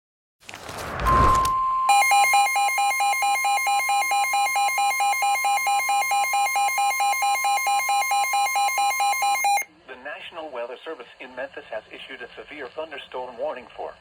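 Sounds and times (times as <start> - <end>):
steady alert tone: 1.1 - 2.4
warbling radio alarm: 1.1 - 9.7.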